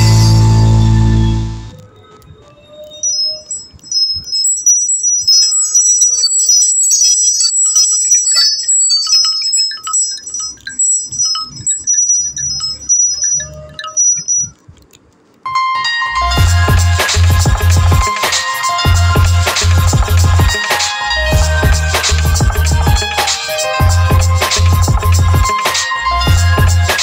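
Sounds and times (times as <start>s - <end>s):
tinkling phone ringtone: 3.1s - 14.7s, 15.5s - 27.0s
louder ringtone: 15.5s - 27.0s.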